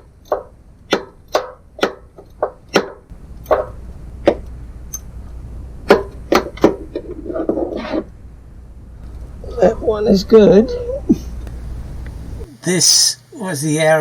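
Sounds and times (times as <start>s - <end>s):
low steady rumble: 0.0s - 14.0s.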